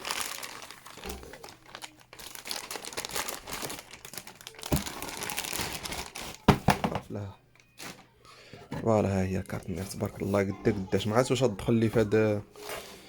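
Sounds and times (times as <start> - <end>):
plastic packaging crinkling: 0.0 - 7.0.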